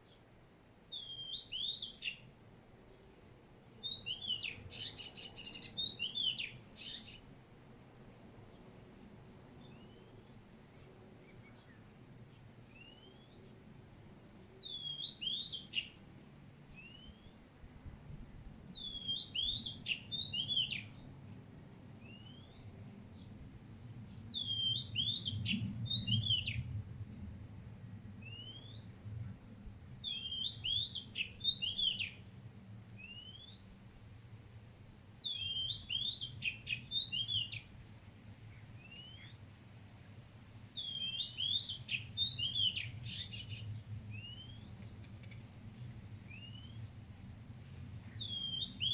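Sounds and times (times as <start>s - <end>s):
bird singing chirping notes: 0.9s - 2.2s, 3.8s - 7.2s, 14.6s - 16.0s, 18.7s - 21.0s, 24.3s - 26.7s, 28.2s - 28.9s, 30.0s - 32.2s, 33.0s - 33.7s, 35.2s - 37.7s, 38.8s - 39.4s, 40.8s - 44.8s, 46.3s - 46.8s, 48.1s - 48.9s
faint low rumble: 20.9s - 30.1s.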